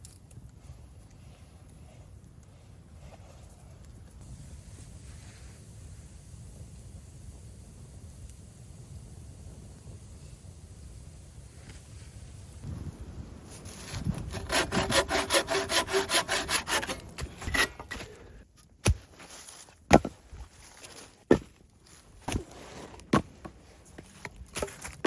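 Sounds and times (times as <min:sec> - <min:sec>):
hand saw cutting wood: 0:13.7 - 0:18.2.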